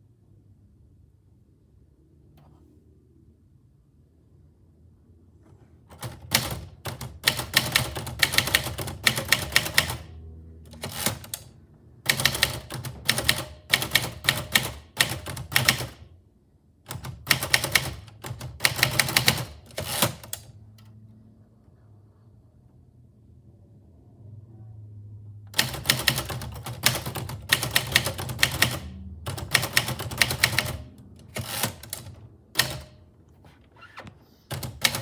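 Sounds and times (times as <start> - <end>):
typewriter key strikes: 10.7 - 11.5, 16.9 - 20.4, 25.6 - 33.0, 34.5 - 35.0.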